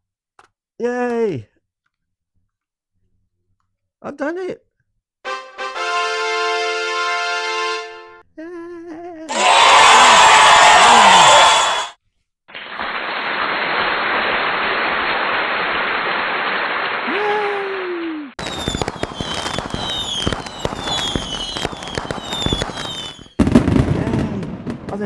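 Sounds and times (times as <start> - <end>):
firework hiss: 9.3 - 11.9, 12.6 - 17.1, 18.4 - 23.4
falling firework whistles: 9.4 - 12.0, 18.4 - 24.0
fireworks crackling pops: 12.5 - 17.1, 18.4 - 25.0.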